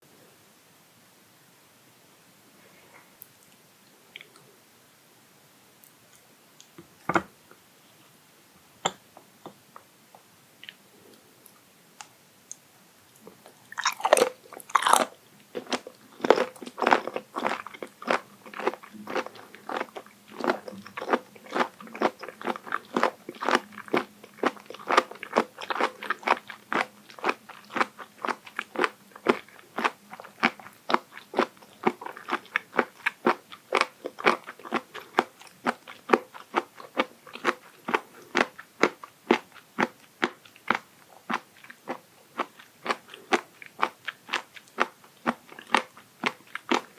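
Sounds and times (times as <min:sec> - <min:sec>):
person chewing crunchy food: 0:13.2 - 0:46.9.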